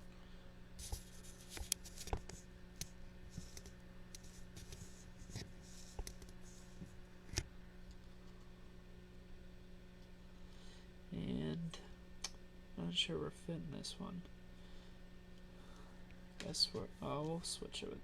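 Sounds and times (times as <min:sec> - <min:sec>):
steady low hum: 0:00.0 - 0:18.0
cards sliding and rustling: 0:03.3 - 0:07.4.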